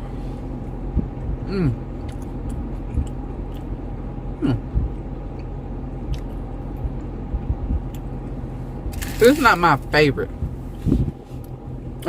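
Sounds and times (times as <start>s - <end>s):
steady low drone: 0.0s - 12.0s
person chewing food: 1.9s - 3.8s, 5.3s - 6.6s.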